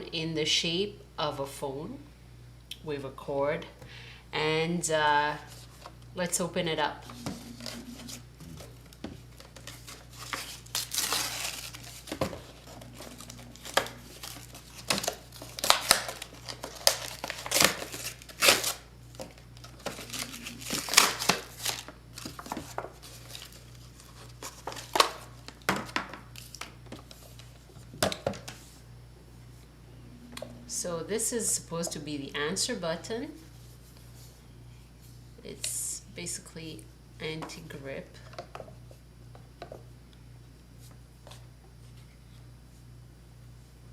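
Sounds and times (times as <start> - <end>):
packaging crinkling and tearing: 8.8 - 25.7.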